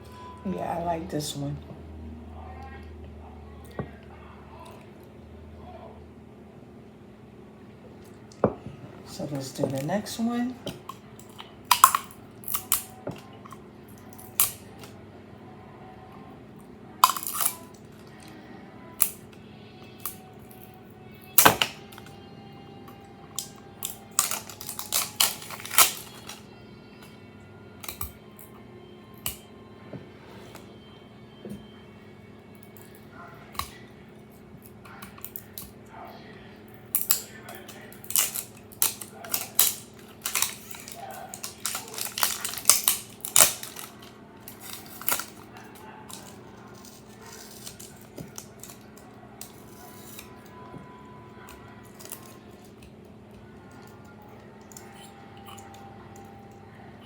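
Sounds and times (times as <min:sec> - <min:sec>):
clicks handling tumbler and wrapping: 0:17.0 - 0:18.3, 0:22.9 - 0:26.4, 0:37.0 - 0:50.6, 0:51.8 - 0:52.9
scissors snipping: 0:23.4 - 0:26.4, 0:37.0 - 0:45.4
plastic crinkling: 0:23.8 - 0:26.4, 0:37.0 - 0:50.4.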